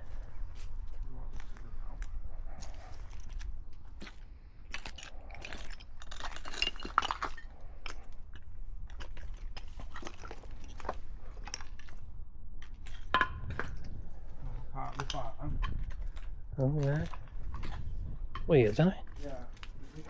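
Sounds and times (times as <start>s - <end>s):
footsteps crunching over rubble: 0.0s - 20.0s
steady low rumble: 0.0s - 20.0s
clinks: 4.7s - 8.1s.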